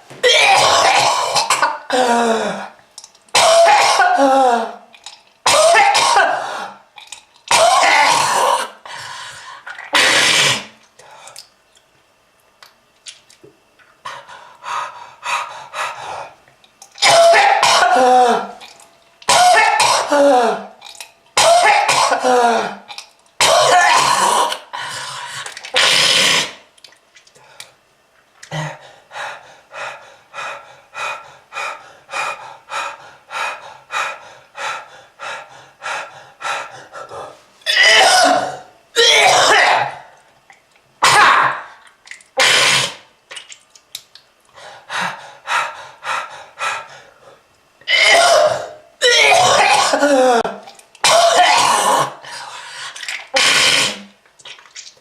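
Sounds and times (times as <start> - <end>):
person coughing harshly: 0.2 - 2.2, 3.4 - 4.8, 5.5 - 6.8, 7.5 - 8.8, 17.0 - 18.6, 19.3 - 20.7, 21.4 - 22.8, 23.4 - 24.6, 37.7 - 40.1, 41.0 - 41.7, 47.9 - 52.2.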